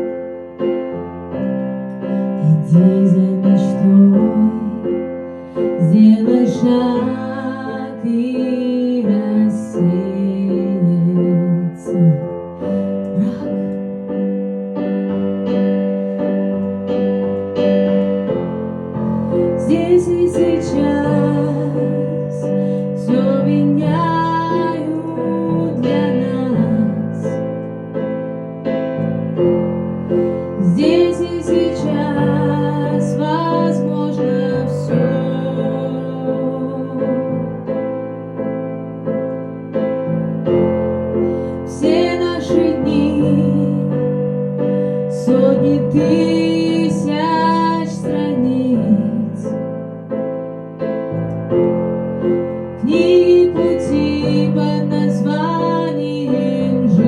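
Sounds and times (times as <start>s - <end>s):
piano: 0.0s - 57.0s
woman singing: 2.4s - 12.4s, 13.1s - 13.8s, 19.3s - 27.4s, 30.6s - 37.6s, 41.7s - 44.2s, 45.0s - 49.6s, 52.8s - 57.0s.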